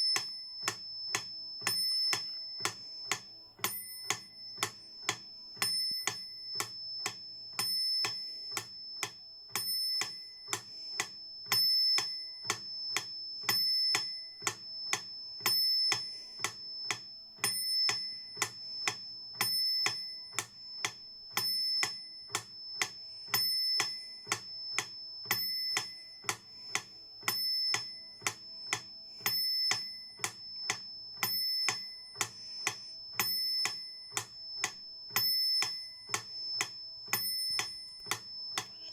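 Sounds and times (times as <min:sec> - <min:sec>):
steady high-pitched tone: 0:00.0 - 0:38.9
metronome ticking: 0:31.6 - 0:38.8.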